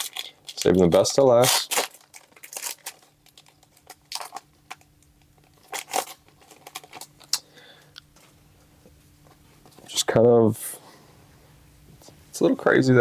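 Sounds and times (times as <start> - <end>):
foil pack crinkling: 0.0 - 7.4.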